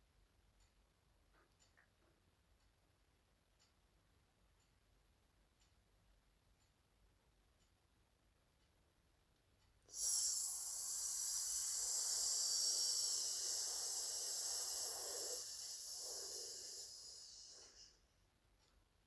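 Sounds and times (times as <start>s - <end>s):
loud steady hiss: 9.9s - 18.1s.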